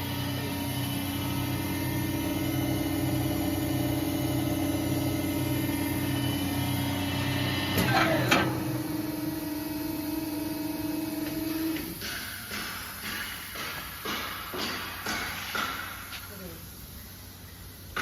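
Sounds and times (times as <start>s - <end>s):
drilling machine motor hum: 0.0s - 12.0s.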